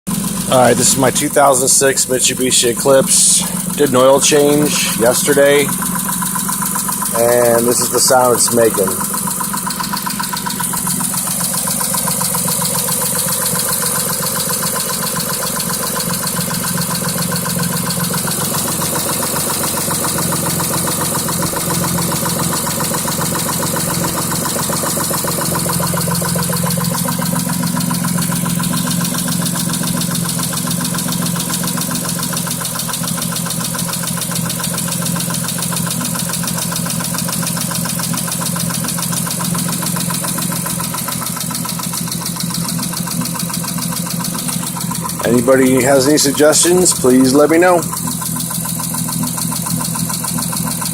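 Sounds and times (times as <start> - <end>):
engine running with regular knock: 0.1 - 50.9.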